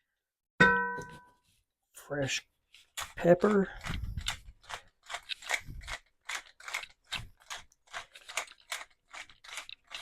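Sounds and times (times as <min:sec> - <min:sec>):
pepper mill grinding: 0:03.8 - 0:10.0.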